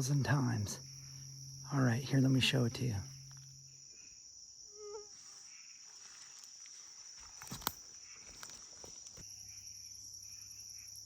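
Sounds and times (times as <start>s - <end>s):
crickets and insects chirping: 0.0s - 11.0s
sharp snaps or steps: 7.2s - 9.2s.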